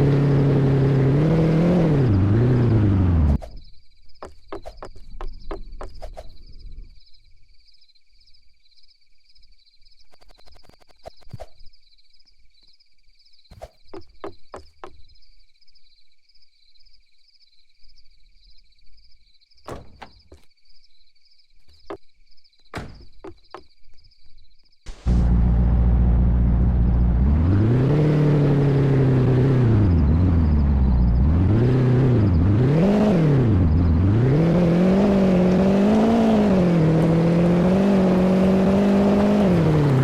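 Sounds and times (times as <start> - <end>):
knocks and thumps: 4.2 - 6.4, 13.5 - 15.0, 19.7 - 20.5, 22.7 - 23.7
low rumble: 24.9 - 27.8.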